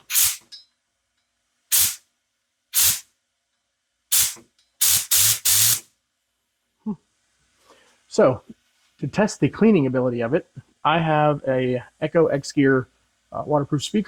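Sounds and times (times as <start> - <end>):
compressed air blasts: 0.0 - 0.4, 1.7 - 2.0, 2.8 - 3.0, 4.1 - 5.9.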